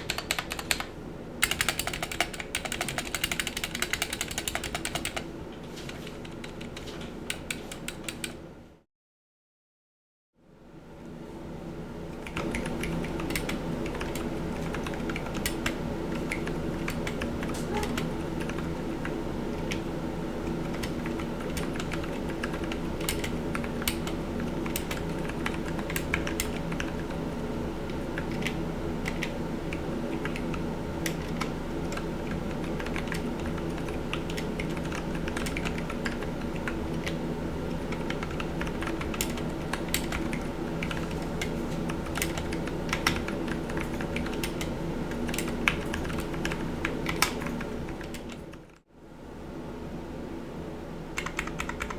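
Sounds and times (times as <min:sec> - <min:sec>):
mechanical keyboard keystroke clacks: 0:00.0 - 0:05.2
steady fan hum: 0:00.0 - 0:08.8, 0:10.4 - 0:51.9.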